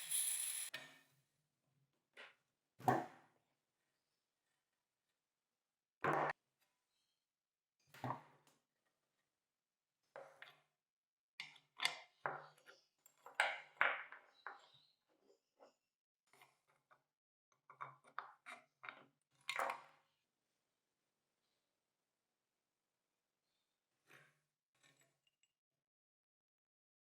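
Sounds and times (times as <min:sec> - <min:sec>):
metal tools clinking and clanking: 0:00.0 - 0:00.7.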